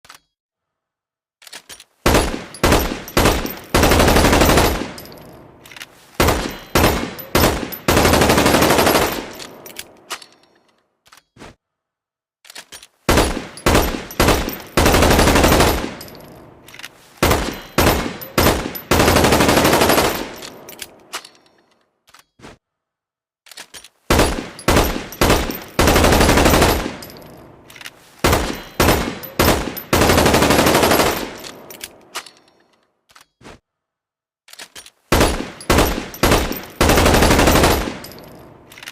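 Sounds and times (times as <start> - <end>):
rifle gunfire: 2.1 - 5.2, 6.2 - 9.4, 13.1 - 16.2, 24.1 - 27.4, 35.1 - 38.3.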